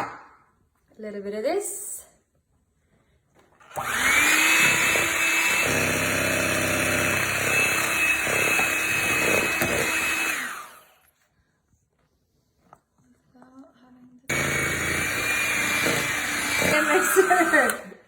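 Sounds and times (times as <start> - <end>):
electric mixer motor whine: 3.6 - 11.1, 14.3 - 17.9.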